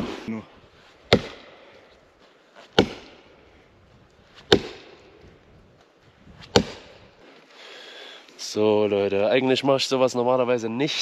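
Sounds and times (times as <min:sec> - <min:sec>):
axe chopping tree trunk: 0:01.1 - 0:01.6, 0:02.6 - 0:03.4, 0:04.3 - 0:05.2, 0:06.4 - 0:07.1.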